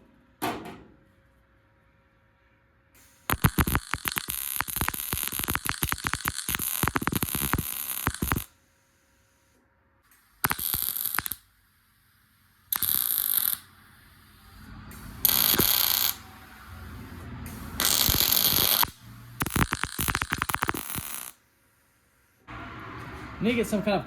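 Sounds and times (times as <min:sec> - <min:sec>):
welder crackling hiss: 0:03.0 - 0:08.5, 0:10.1 - 0:11.4, 0:12.6 - 0:21.4.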